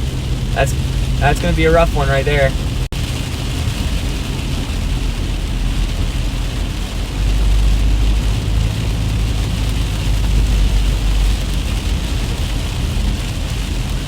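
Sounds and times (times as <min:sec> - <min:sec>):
heavy rain on car: 0:00.0 - 0:14.0
road noise rumble: 0:00.0 - 0:14.0.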